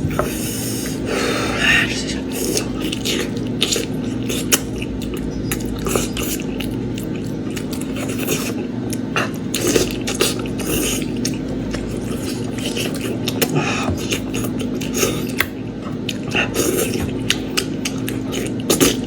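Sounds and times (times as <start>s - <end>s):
low hum: 0.0s - 13.6s
chewing meat: 0.2s - 19.0s.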